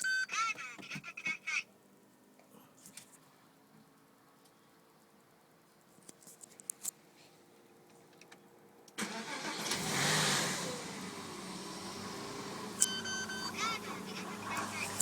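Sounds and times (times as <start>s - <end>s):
car engine starting and idling: 8.9s - 15.0s.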